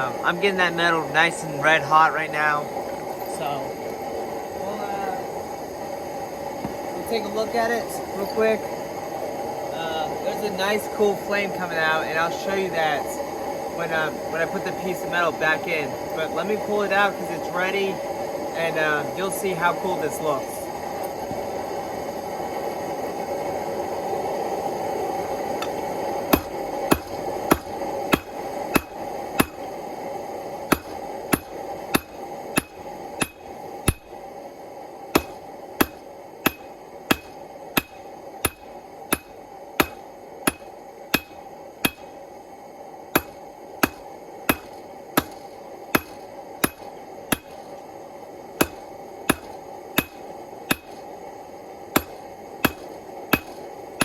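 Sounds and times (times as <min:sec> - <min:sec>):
forge flame rushing: 0:00.0 - 0:54.0
hammer striking hot steel: 0:25.5 - 0:29.8, 0:30.6 - 0:34.2, 0:35.1 - 0:42.2, 0:43.1 - 0:47.8, 0:48.6 - 0:51.2, 0:51.9 - 0:54.0.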